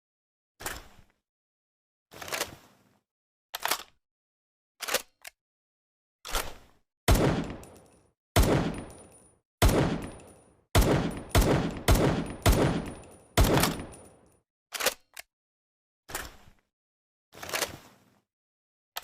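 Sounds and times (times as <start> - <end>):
imitated pistol shots: 7.1 - 7.8, 8.4 - 9.0, 9.6 - 14.1.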